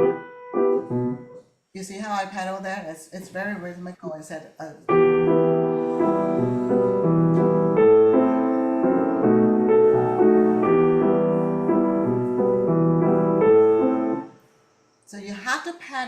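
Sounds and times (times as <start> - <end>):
dance-like piano accompaniment: 0.0 - 1.4, 4.9 - 14.4.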